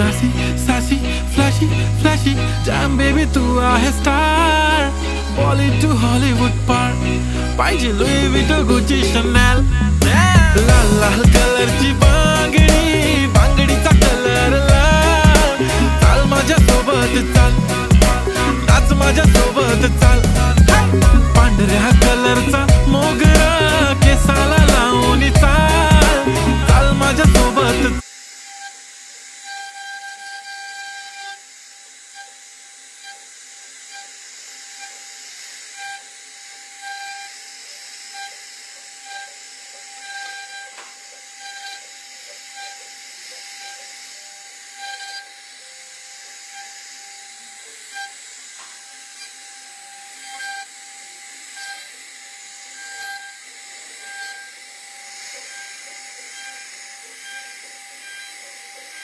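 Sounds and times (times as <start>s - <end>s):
router spindle whine: 0.0s - 59.0s.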